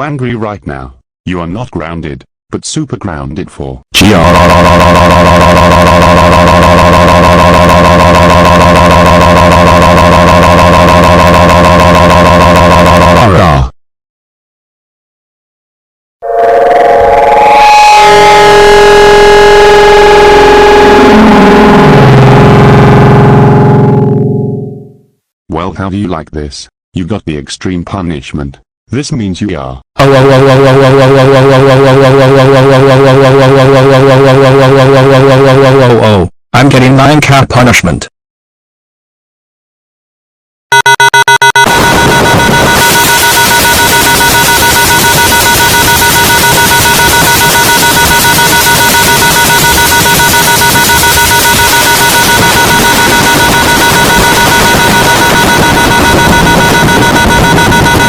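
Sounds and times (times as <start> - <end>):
distorted electronic buzzing tone: 4.0 - 13.6, 16.2 - 25.1, 40.7 - 58.0.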